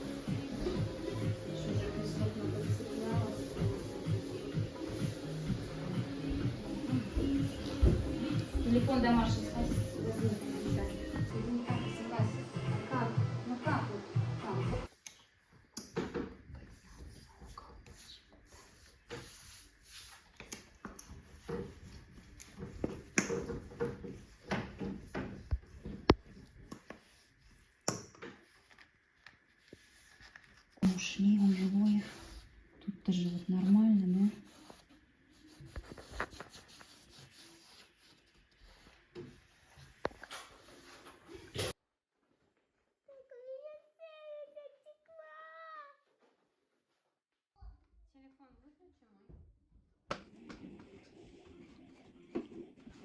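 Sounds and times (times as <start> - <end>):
knocks and rustling of handling: 20.2 - 31.1
paper rustling: 28.3 - 32.4, 34.3 - 41.7.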